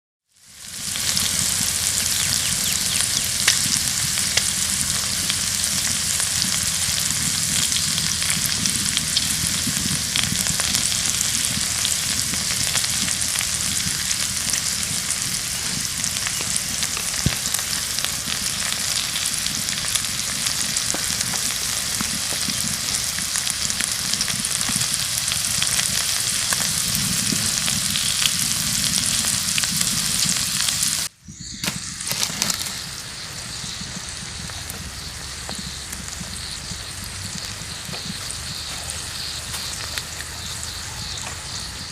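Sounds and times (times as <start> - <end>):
pork sizzling on hot stone: 0.2 - 41.9.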